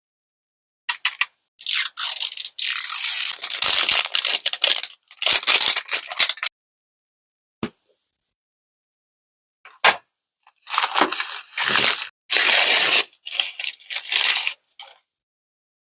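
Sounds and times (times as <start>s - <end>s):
plastic packaging crinkling: 1.6s - 6.5s, 10.5s - 15.0s.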